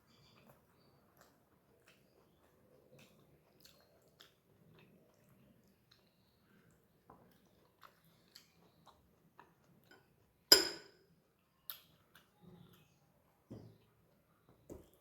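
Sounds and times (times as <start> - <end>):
mouth clicks and chewing: 0.1 - 9.9, 11.6 - 13.0
dishware clink: 10.5 - 11.0.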